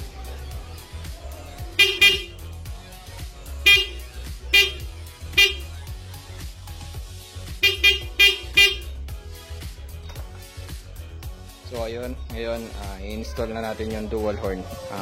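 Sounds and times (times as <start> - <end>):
background music: 0.0 - 15.0
scooter horn beeps: 1.8 - 2.4, 3.6 - 5.8, 7.6 - 8.9.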